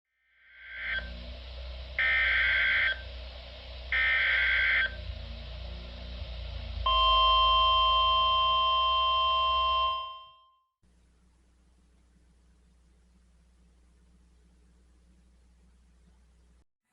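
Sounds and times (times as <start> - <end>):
radio hiss: 0.4 - 6.9
warbling digital data tones: 0.4 - 9.9.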